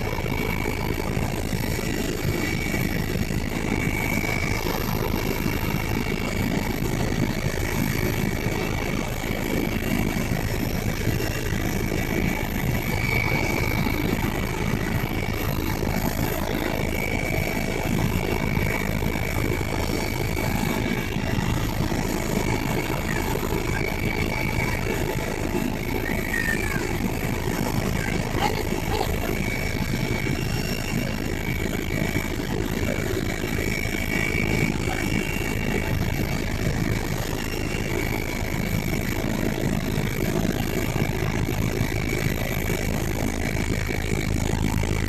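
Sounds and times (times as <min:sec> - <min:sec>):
faint steady whine: 0:00.0 - 0:45.0
helicopter engine and rotor: 0:00.0 - 0:45.0.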